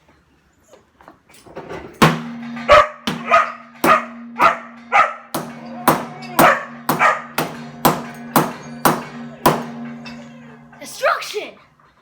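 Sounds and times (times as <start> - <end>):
steady low hum: 2.0 - 12.0
dog barking: 2.7 - 5.3, 6.4 - 7.4.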